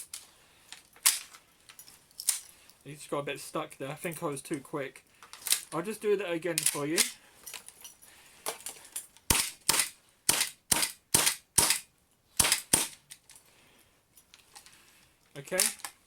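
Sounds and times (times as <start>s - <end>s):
airsoft pistol shots: 9.3s - 13.0s.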